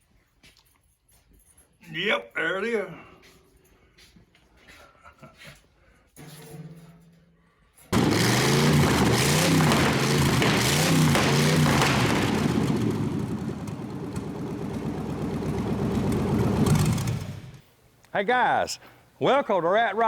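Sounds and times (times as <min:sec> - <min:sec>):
vehicle engine revving: 0:08.0 - 0:17.6.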